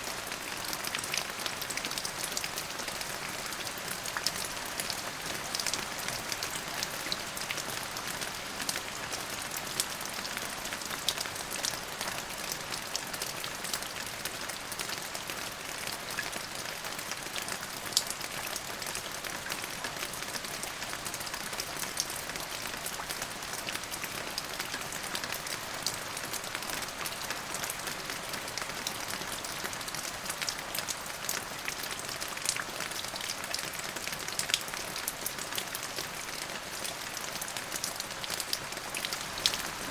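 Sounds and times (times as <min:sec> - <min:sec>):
steady rain hiss: 0:34.5 - 0:39.9.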